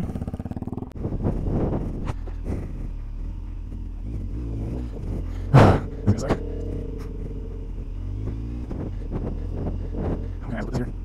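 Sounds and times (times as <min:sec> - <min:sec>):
motorcycle engine running: 0:00.0 - 0:11.0
loud thump: 0:05.0 - 0:10.4.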